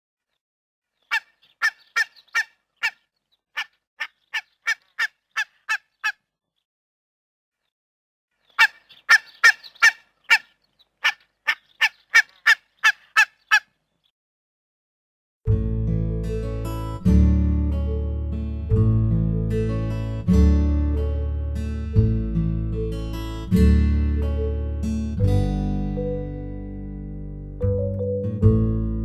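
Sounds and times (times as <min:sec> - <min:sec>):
acoustic guitar music: 0:15.5 - 0:29.0.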